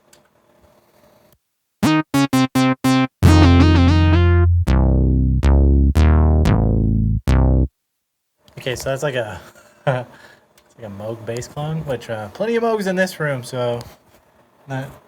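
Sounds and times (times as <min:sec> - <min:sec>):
synthesizer bass notes: 0:01.8 - 0:07.7.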